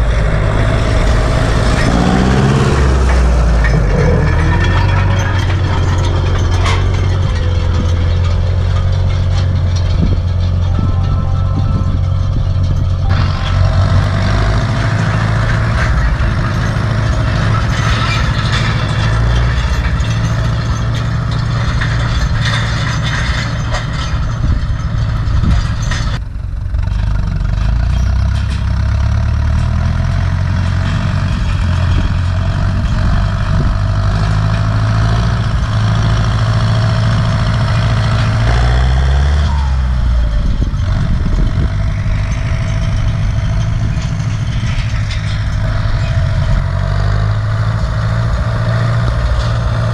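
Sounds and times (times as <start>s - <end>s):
tractor diesel engine running: 0.0s - 49.9s.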